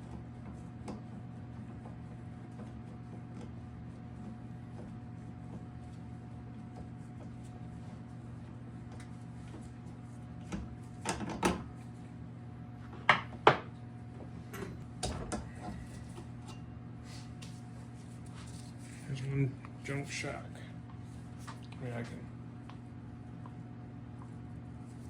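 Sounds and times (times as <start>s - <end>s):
steady electrical hum: 0.0s - 25.0s.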